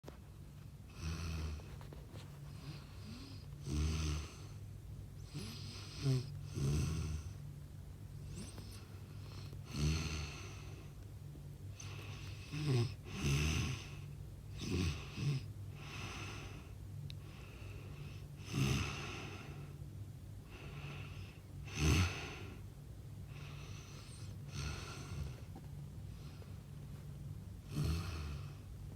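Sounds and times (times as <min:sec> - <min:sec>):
loud snoring: 0:00.9 - 0:01.7, 0:02.6 - 0:04.6, 0:05.2 - 0:07.4, 0:08.3 - 0:10.9, 0:11.8 - 0:16.6, 0:18.4 - 0:19.6, 0:21.6 - 0:22.6, 0:23.4 - 0:25.4, 0:27.6 - 0:28.6.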